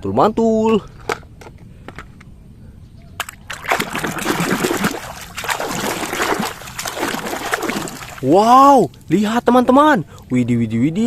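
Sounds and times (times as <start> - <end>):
water splashing and sloshing: 3.2 - 9.0.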